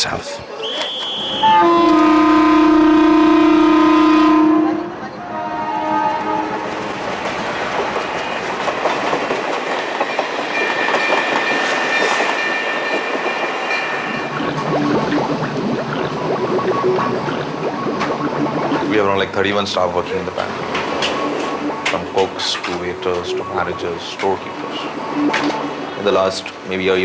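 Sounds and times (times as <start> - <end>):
train horn: 0.9 - 6.9
train clickety-clack on rails: 6.2 - 14.4, 19.2 - 27.0.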